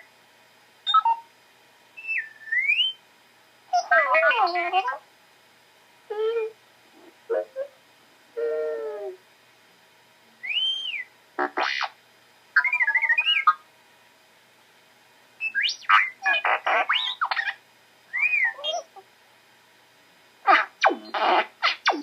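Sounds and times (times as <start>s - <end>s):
electronic robot beeps and whistles: 0.9s - 1.2s, 2.0s - 3.0s, 10.4s - 11.9s, 12.6s - 13.6s, 15.4s - 17.5s, 18.1s - 18.9s.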